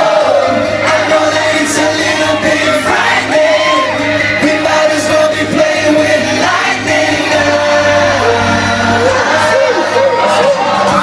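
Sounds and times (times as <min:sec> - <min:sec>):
voices singing sustained notes: 0:00.0 - 0:10.9
pop band playing: 0:00.0 - 0:11.0.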